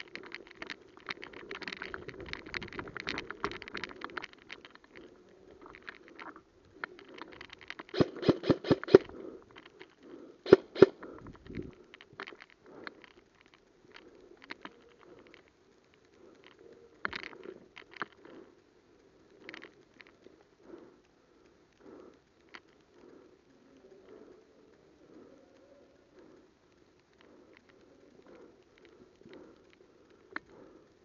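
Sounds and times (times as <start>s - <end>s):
gun clicks: 6.8s - 18.4s
airsoft guns firing: 7.9s - 9.1s, 10.5s - 10.9s.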